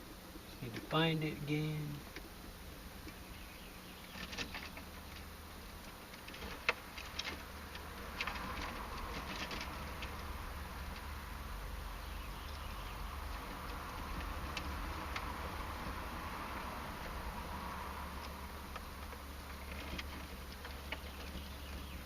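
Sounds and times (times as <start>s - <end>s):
low steady hum: 0.0s - 22.0s
wiring and hardware clicking: 4.0s - 11.6s, 12.4s - 21.8s.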